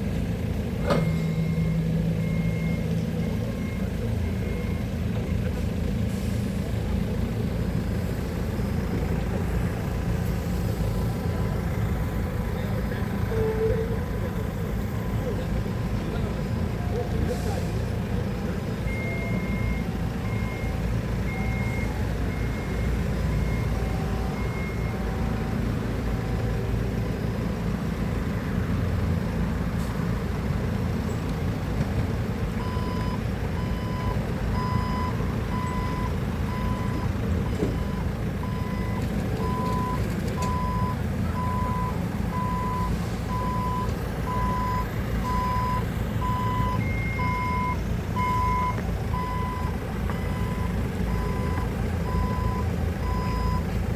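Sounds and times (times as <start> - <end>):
diesel engine running: 0.0 - 53.9
backup alarm beeping: 32.6 - 53.7.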